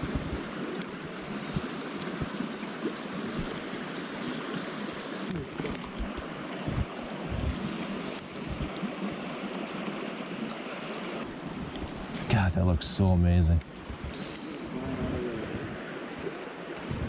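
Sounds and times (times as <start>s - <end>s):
wind buffeting the microphone: 0.0s - 2.5s, 5.4s - 8.8s, 13.6s - 17.0s
stream rushing over riffles: 0.0s - 17.0s.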